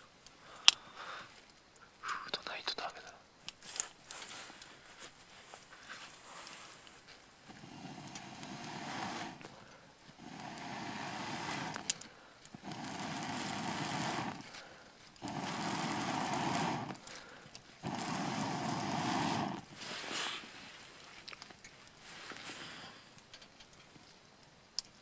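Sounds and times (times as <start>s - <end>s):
bursts of rushing airy noise: 7.4s - 14.6s, 15.2s - 20.4s.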